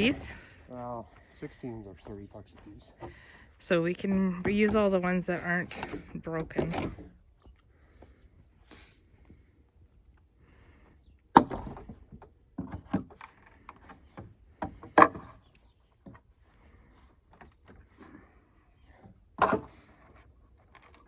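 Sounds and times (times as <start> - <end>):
wooden planks knocking and clattering: 4.0 - 7.2, 11.4 - 15.4, 19.4 - 21.0.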